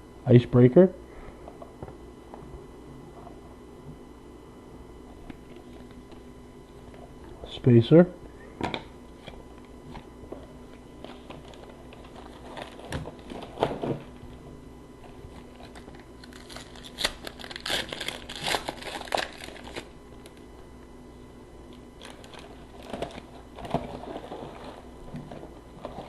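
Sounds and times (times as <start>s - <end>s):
wrapper tearing and crinkling: 11.0s - 14.1s, 15.4s - 20.4s, 22.0s - 24.8s.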